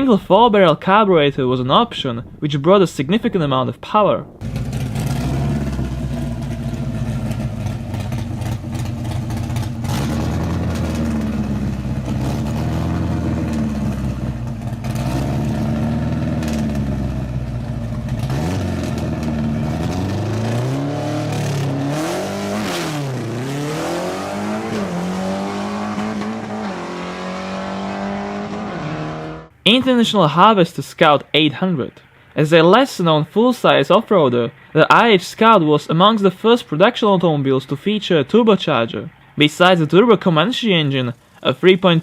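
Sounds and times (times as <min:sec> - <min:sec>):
car engine idling and revving: 0:04.4 - 0:29.6.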